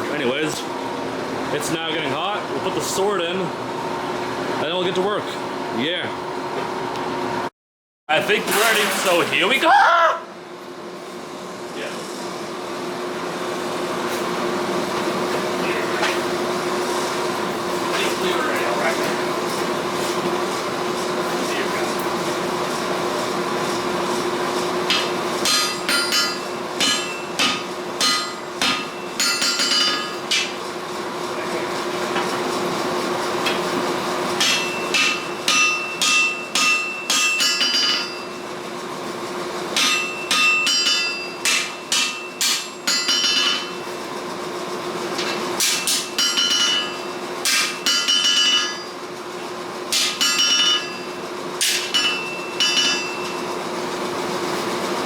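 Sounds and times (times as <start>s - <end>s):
steady hum: 24.6s - 32.3s
hammer striking hot steel: 24.9s - 30.6s, 34.4s - 38.3s, 39.8s - 43.8s, 45.2s - 48.9s, 49.9s - 53.4s.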